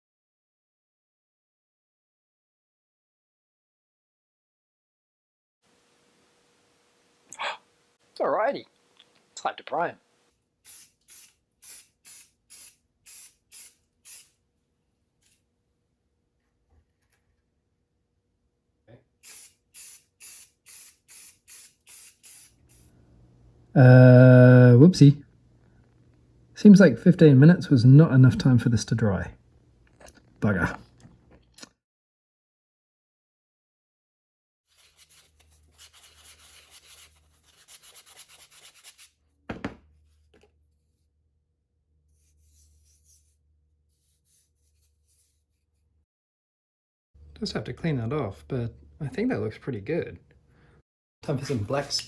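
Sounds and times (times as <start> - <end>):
aerosol spray can hissing: 10.7 - 14.4, 19.2 - 22.9.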